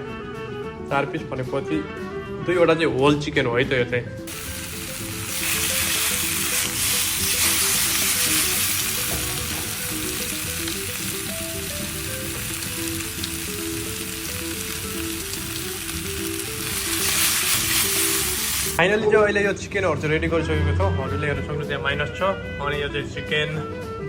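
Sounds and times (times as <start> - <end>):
background music: 0.0 - 24.0
chicken sizzling: 4.3 - 18.8.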